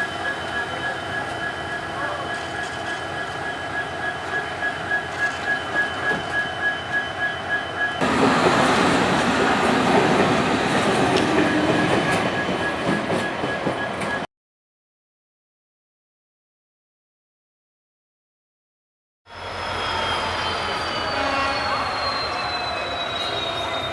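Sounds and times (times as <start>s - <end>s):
train running over rails: 0.0s - 14.3s, 19.3s - 23.9s
wheels clickety-clack over rail joints: 8.0s - 14.3s.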